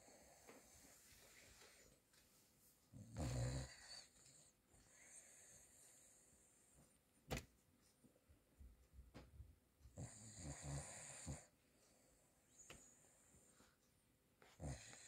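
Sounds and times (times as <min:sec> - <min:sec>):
dog snoring: 0:03.0 - 0:06.2, 0:10.0 - 0:11.5, 0:14.4 - 0:15.0.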